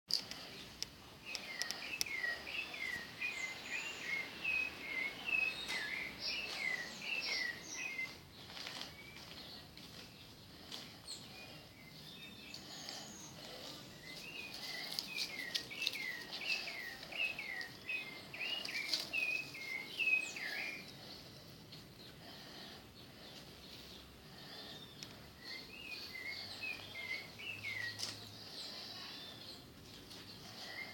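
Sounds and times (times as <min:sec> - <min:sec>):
birds chirping: 0:00.1 - 0:30.9
faint background noise: 0:00.1 - 0:30.9.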